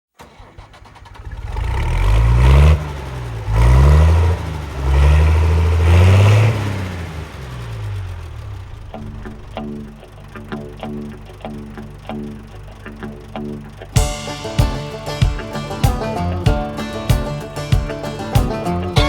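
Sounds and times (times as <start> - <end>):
farm vehicle engine revving: 0.2 - 19.0.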